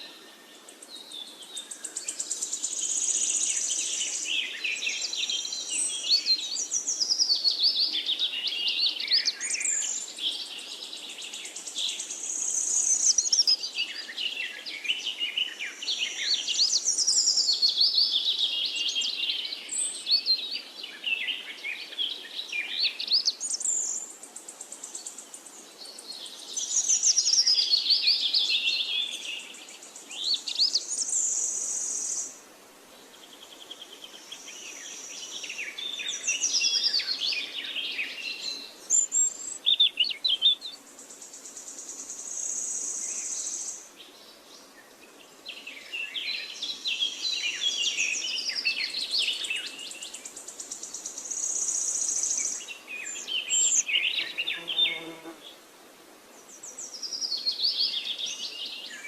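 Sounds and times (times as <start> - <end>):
songbirds twittering: 0.0 - 59.0.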